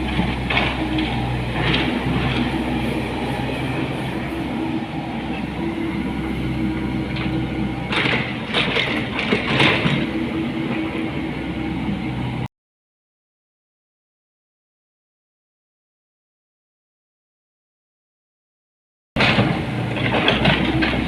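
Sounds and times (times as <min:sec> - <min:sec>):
excavator diesel engine droning: 0:00.0 - 0:12.5, 0:19.2 - 0:21.0.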